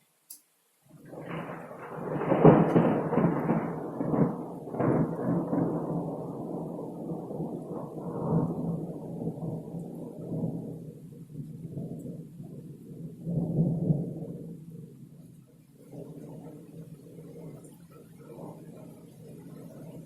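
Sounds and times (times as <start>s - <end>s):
thunder rumbling: 0.9s - 20.0s.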